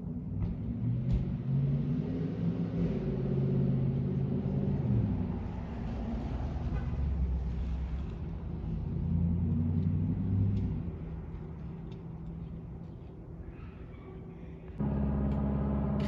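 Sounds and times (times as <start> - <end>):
aircraft engine rumble passing overhead: 10.8 - 16.0.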